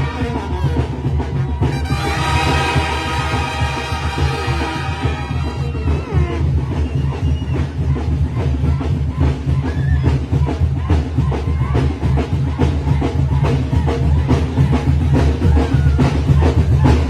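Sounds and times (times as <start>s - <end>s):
tuba bass line: 0.0s - 6.8s
brass band playing: 0.0s - 7.2s
steady drum beats: 0.0s - 17.0s.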